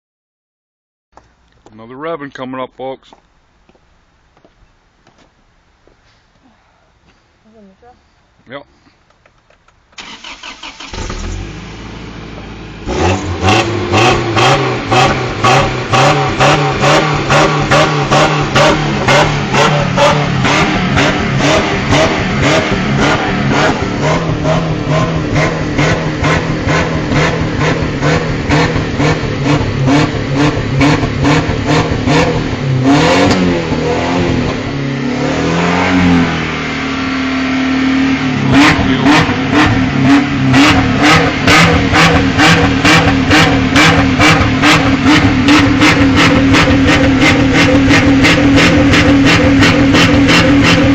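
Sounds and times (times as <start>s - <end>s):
truck engine revving: 10.0s - 50.9s.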